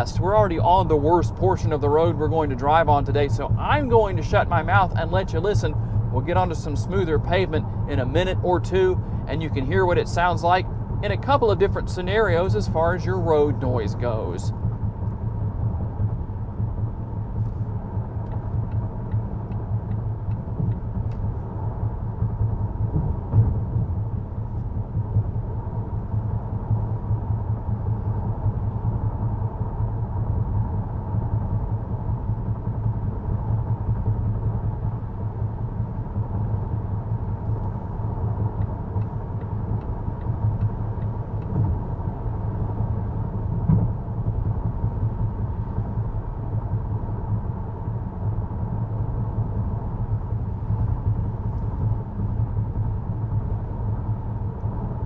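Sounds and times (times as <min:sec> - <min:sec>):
tyre and road rumble in car cabin: 0:00.0 - 0:55.0
light thump: 0:43.5 - 0:44.0.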